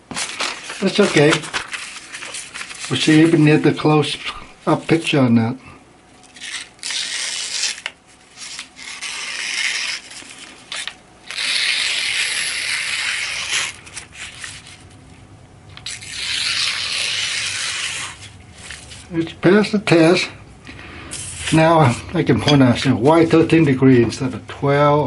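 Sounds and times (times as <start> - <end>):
knife slicing through paper: 6.4 - 14.8.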